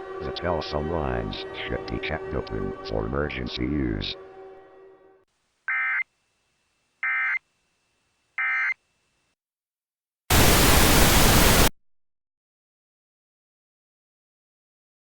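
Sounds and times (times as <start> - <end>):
white-noise static burst: 10.3 - 11.7.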